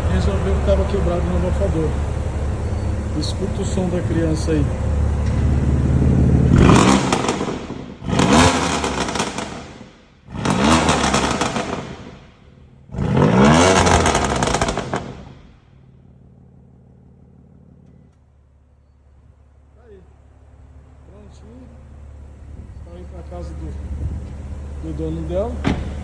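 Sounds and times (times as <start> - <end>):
car engine revving: 0.0 - 18.1
car engine idling: 0.0 - 26.0.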